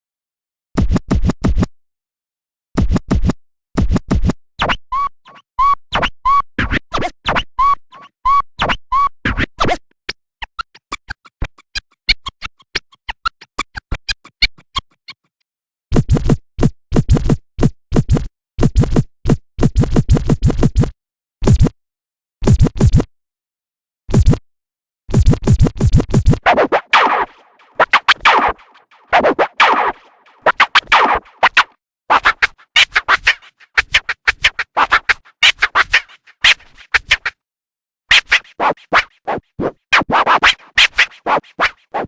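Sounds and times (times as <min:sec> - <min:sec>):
record scratching: 0:25.7 - 0:33.4, 0:40.0 - 0:40.6.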